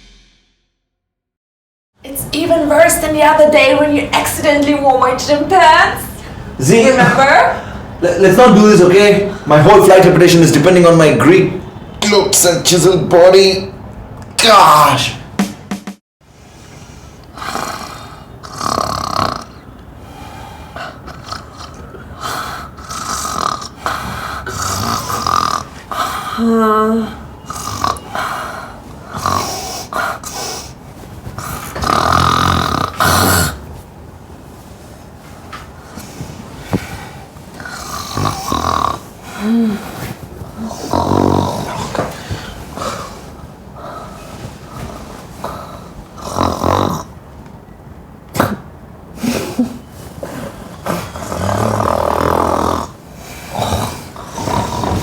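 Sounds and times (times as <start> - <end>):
woman snoring: 17.3 - 19.6, 20.8 - 30.5, 31.4 - 33.6, 37.6 - 40.0, 40.6 - 42.2, 45.4 - 47.1, 50.8 - 55.0.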